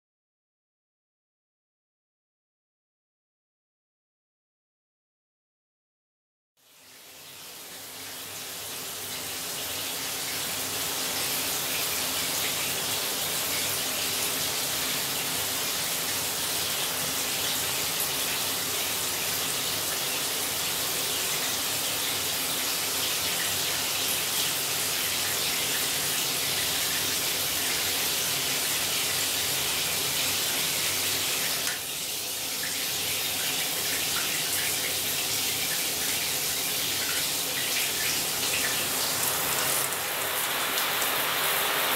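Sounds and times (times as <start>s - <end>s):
shower head spraying water: 36.9s - 41.9s.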